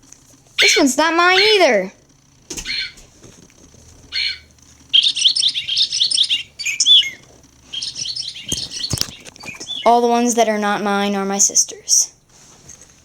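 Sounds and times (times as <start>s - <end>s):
recorded bird chirps from toy speaker: 0.6s - 1.7s, 2.6s - 3.0s, 4.1s - 10.0s.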